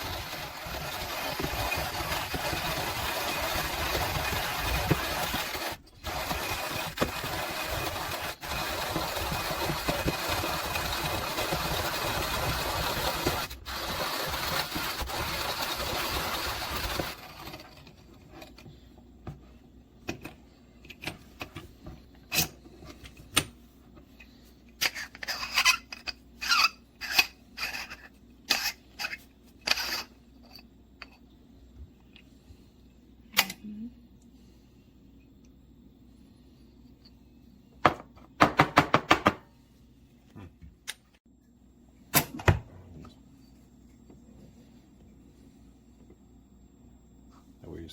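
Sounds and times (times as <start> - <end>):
grinder crushing coffee beans: 0.0 - 18.6, 24.8 - 30.6.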